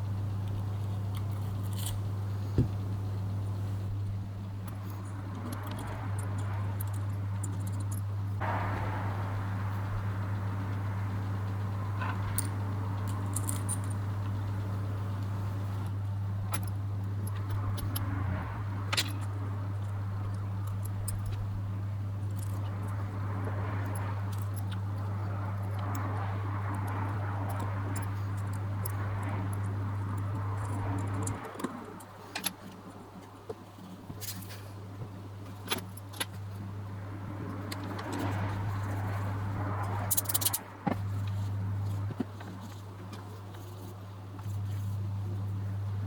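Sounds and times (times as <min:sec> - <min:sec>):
steady low hum: 0:00.0 - 0:46.0
light metallic clicks of tools: 0:03.8 - 0:08.4.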